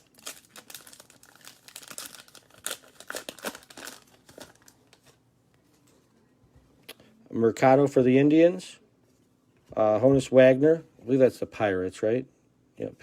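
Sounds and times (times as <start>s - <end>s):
wrapper tearing and crinkling: 0.0s - 5.2s.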